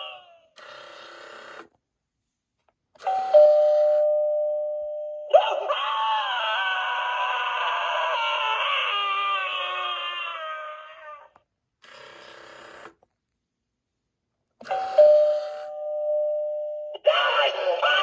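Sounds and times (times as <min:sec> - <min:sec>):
recorded scream: 0:05.3 - 0:11.4, 0:17.0 - 0:18.0.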